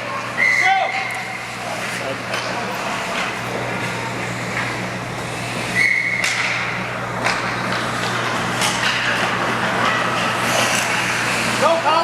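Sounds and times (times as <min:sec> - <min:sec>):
steady hum: 0:01.1 - 0:12.0
whistle blast: 0:05.8 - 0:06.3.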